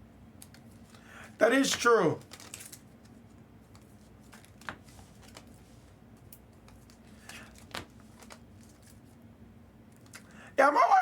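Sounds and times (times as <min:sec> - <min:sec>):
card pack wrappers crinkling: 0:01.6 - 0:03.1, 0:06.6 - 0:09.0.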